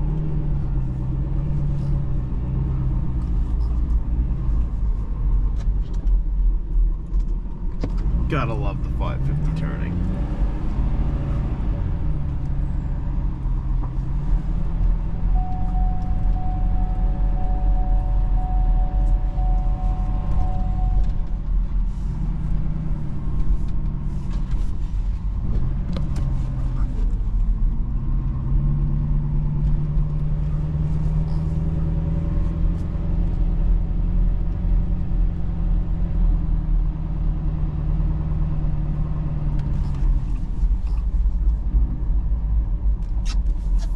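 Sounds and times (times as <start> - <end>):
truck engine running: 8.2 - 27.9.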